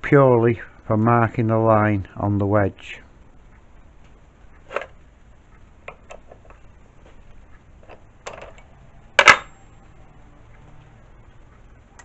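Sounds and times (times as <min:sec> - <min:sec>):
metal parts and tools clicking: 0:07.8 - 0:09.6.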